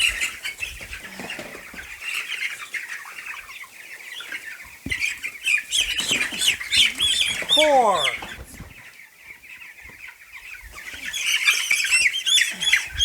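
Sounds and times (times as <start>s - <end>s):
chicks peeping: 0.0s - 13.0s
wings flapping: 5.7s - 8.9s
scuffling: 5.9s - 8.8s.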